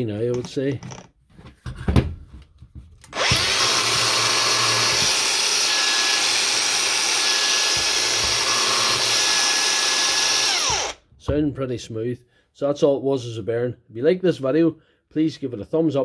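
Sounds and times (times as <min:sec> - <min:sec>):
angle grinder running: 0:03.1 - 0:11.0.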